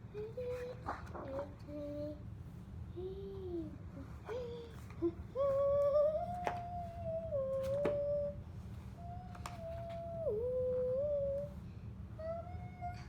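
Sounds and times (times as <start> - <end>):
child humming: 3.0 - 8.4, 9.0 - 11.6, 12.2 - 13.0.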